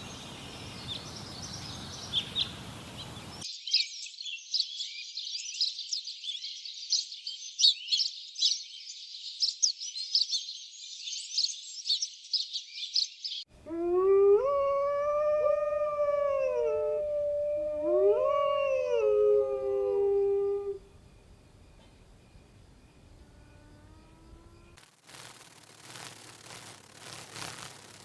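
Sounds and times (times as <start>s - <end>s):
birds chirping: 0.0s - 3.4s, 13.8s - 24.8s
dog howling: 13.6s - 20.9s.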